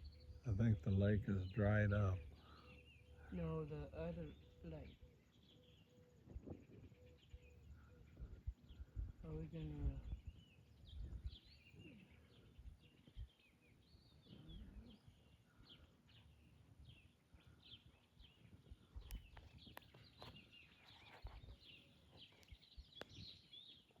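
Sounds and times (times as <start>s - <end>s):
low uneven rumble: 0.0s - 5.4s
birds chirping: 0.0s - 24.0s.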